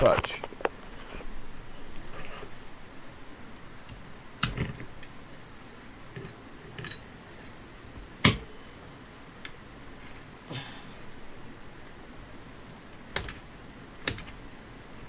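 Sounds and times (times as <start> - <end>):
pliers clicking on metal: 8.2 - 8.5.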